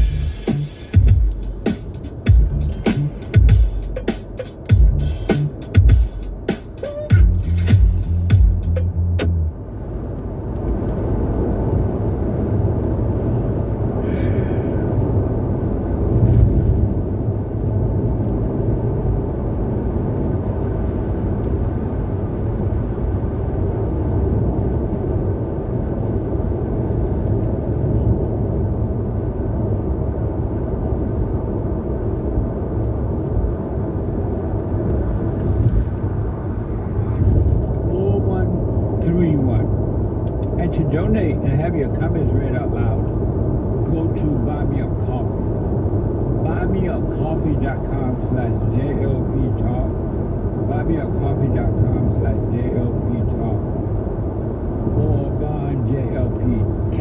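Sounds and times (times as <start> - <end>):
music with heavy bass: 0.0 - 9.5
car driving on road: 0.0 - 57.0.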